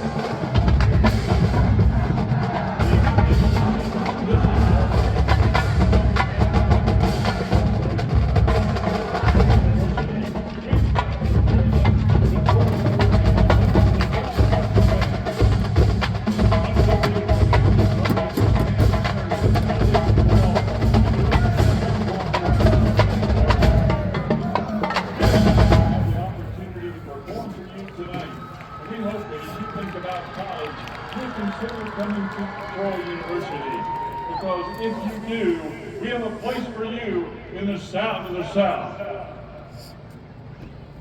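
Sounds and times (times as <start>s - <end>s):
marching drumline playing: 0.0s - 30.4s.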